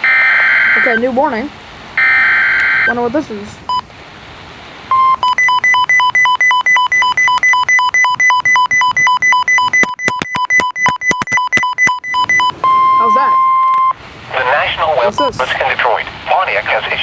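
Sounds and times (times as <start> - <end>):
two-pitch electronic alarm beeps: 0.0 - 1.1, 2.0 - 3.0, 4.9 - 14.0
sharp clicks: 8.4 - 12.1.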